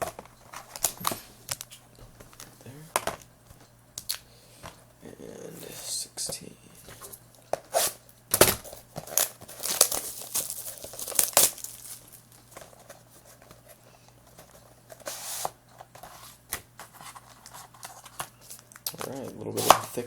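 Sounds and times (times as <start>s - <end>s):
packaging tearing and crinkling: 7.7s - 12.7s.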